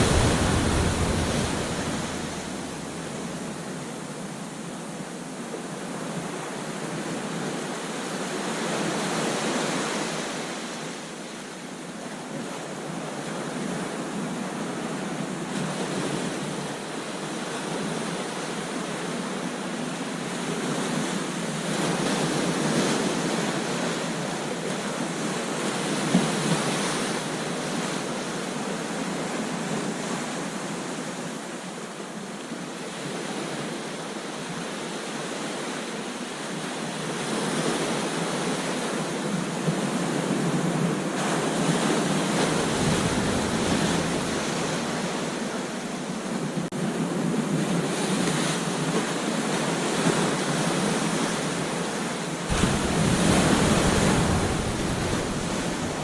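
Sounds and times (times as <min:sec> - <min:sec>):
ocean surf breaking: 0:00.0 - 0:06.4, 0:39.7 - 0:46.7, 0:48.0 - 0:56.0.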